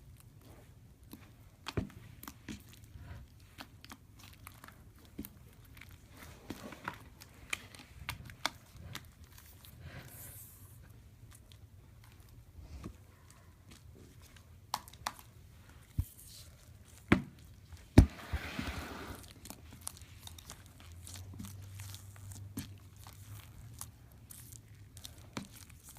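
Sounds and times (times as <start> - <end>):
slime crackling and popping: 19.2 - 25.9.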